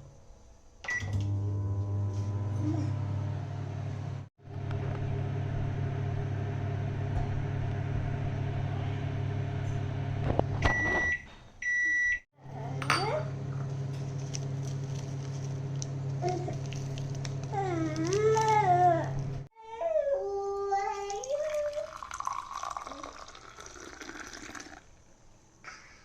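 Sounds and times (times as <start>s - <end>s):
microwave oven humming: 0.8s - 19.5s
microwave beeps: 0.9s - 1.3s, 10.6s - 12.3s.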